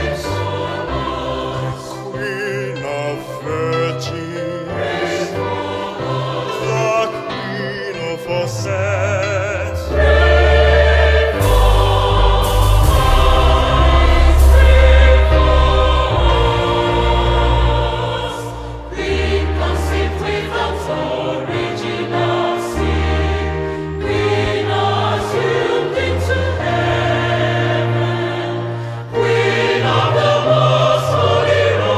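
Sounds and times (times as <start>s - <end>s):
choir singing with vibrato: 0.0s - 31.9s
deep bass accompaniment: 10.0s - 19.7s.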